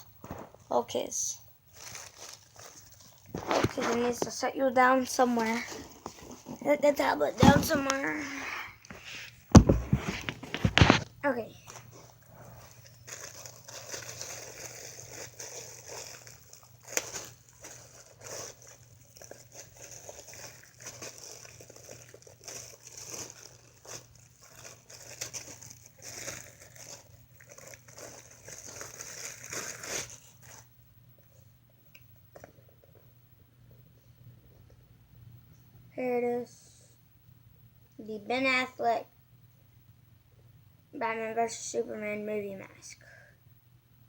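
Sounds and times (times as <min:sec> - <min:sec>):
plastic wrapper crinkling: 0:00.0 - 0:01.1, 0:01.7 - 0:30.8.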